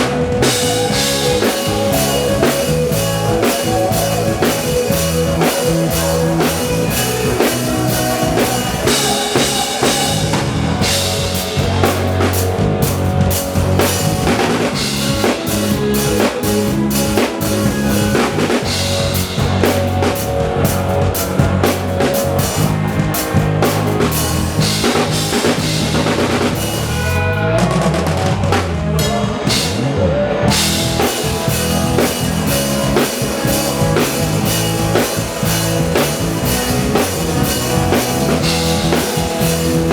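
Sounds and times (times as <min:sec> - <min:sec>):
wavering sliding instrument line: 0:00.0 - 0:23.0
drum kit beat: 0:00.0 - 0:39.9
live band playing: 0:00.0 - 0:39.9.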